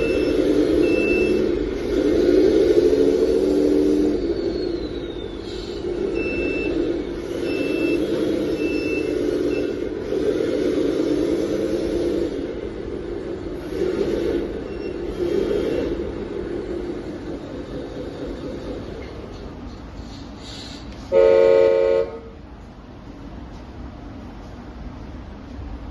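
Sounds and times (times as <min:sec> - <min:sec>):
short high beeps: 0:00.0 - 0:01.5, 0:06.2 - 0:09.8.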